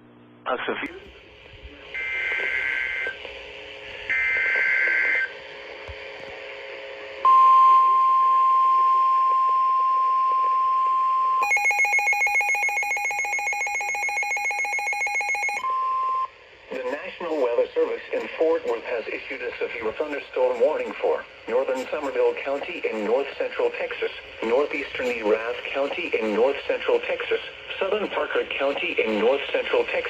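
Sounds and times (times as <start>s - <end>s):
steady single-pitch warning tone: 7.2s - 27.2s
pulsing multi-toned beeping alarm: 11.4s - 16.3s
warbling data bursts: 16.7s - 27.2s.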